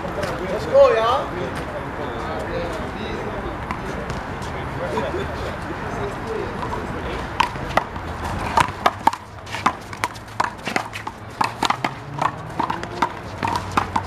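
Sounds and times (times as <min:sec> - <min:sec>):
handball hitting wall and pavement: 0:03.6 - 0:04.4, 0:06.6 - 0:14.0.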